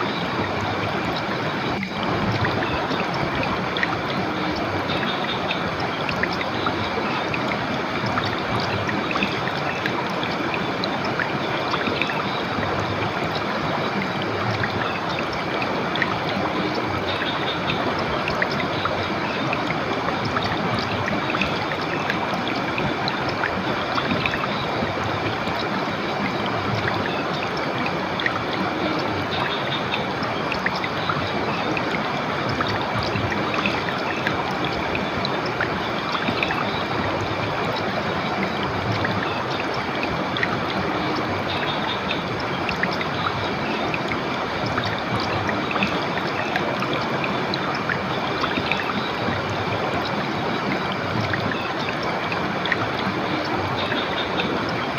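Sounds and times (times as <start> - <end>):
river water running: 0.0 - 54.9.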